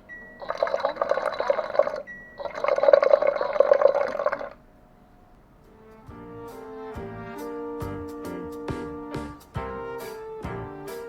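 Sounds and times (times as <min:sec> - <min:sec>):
water pouring into container: 0:00.4 - 0:04.6.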